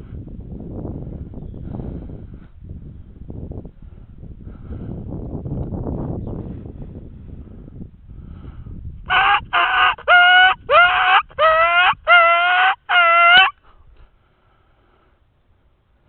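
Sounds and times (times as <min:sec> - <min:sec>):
squealing rabbit distress call: 0:09.1 - 0:13.5.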